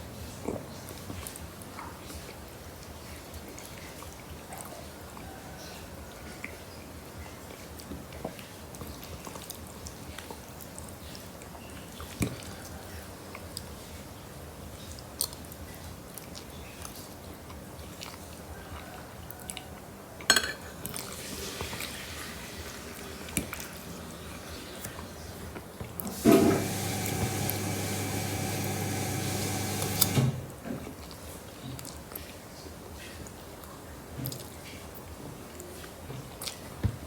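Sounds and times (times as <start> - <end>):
person chewing food: 35.7 - 36.8.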